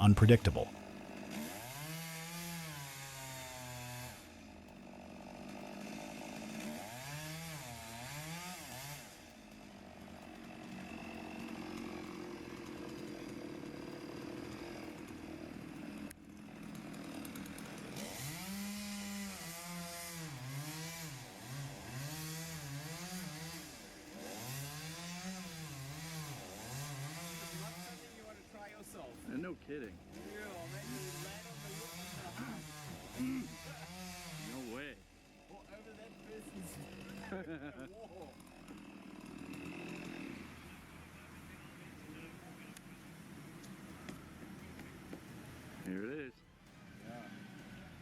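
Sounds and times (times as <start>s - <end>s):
chainsaw revving and cutting: 0.0s - 48.0s.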